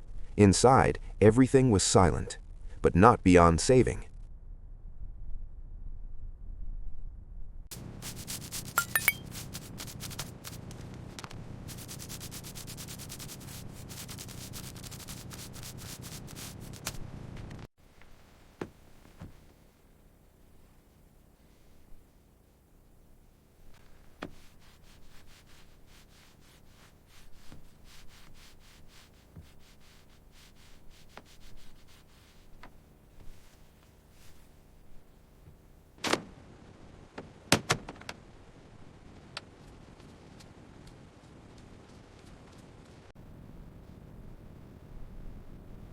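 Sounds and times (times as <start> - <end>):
sanding on a hard surface: 7.7 - 10.7, 11.7 - 16.9, 23.9 - 34.5
faint clinks: 8.8 - 9.3.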